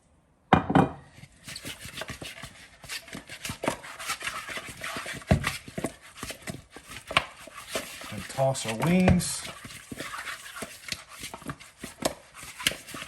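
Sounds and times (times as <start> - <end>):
wet rubbing and slapping of chicken: 1.4 - 13.0.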